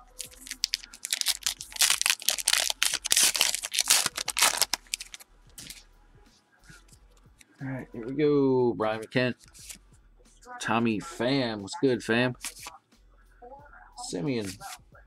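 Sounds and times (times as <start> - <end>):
wrapper tearing and crumpling: 0.0 - 5.8, 12.4 - 12.7.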